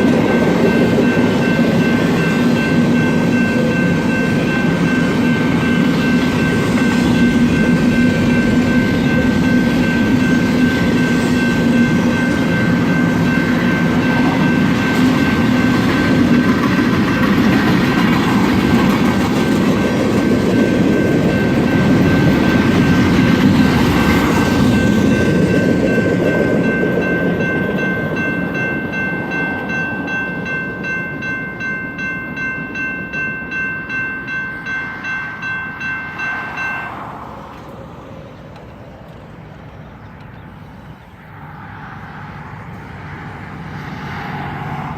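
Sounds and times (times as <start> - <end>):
wheels clattering over rail joints: 0.0 - 30.5
freight train rolling past: 0.0 - 44.9.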